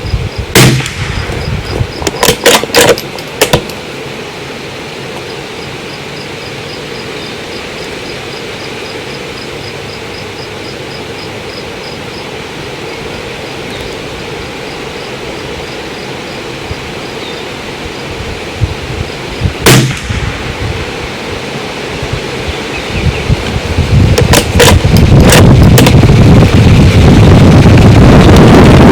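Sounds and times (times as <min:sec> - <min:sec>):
strong wind buffeting microphone: 0:00.0 - 0:04.4, 0:11.2 - 0:28.9
rifle shot: 0:00.5 - 0:03.7, 0:19.6 - 0:20.6, 0:24.2 - 0:26.0.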